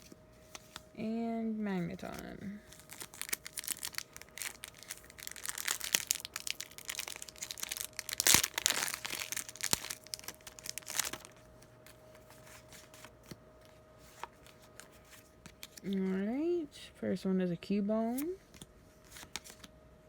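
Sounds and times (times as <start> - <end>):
foil wrapper crinkling and tearing: 2.0 - 13.3.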